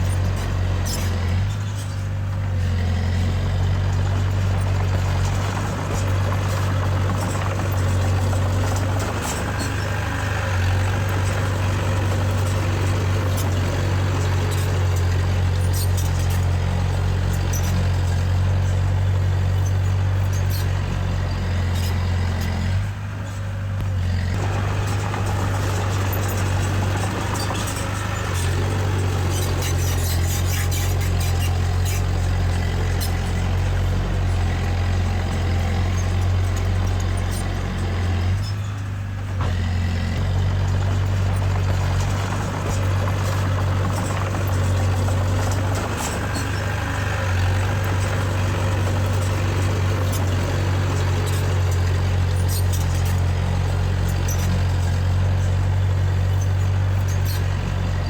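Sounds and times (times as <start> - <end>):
diesel machinery engine running: 0.0 - 58.0
light clicking and clatter: 22.8 - 58.0.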